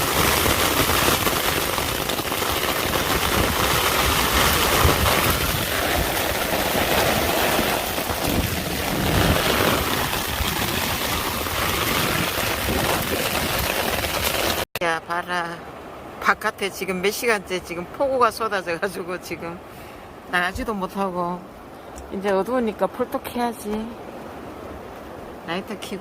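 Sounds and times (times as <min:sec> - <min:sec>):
wind gusts rumbling: 0:00.0 - 0:14.6
heavy rain pouring: 0:00.0 - 0:14.7.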